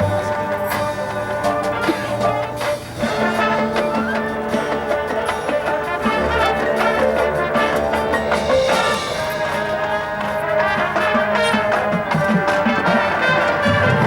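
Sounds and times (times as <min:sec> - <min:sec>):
brass chords: 0:00.0 - 0:14.0
marching percussion: 0:00.0 - 0:14.0.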